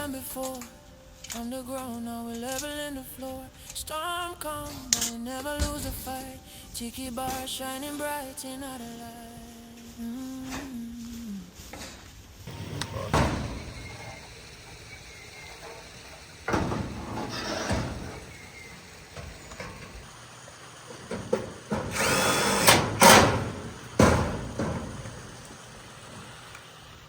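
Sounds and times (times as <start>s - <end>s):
power drill bursts: 12.5s - 27.0s.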